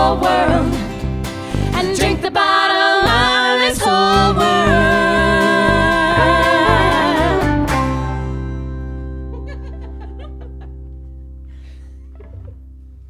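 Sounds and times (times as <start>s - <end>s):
acoustic instruments chord ringing: 4.2s - 13.0s.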